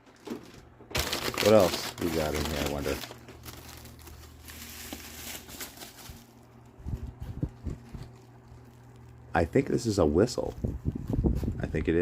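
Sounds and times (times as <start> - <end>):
packaging rustling: 0.1 - 9.3.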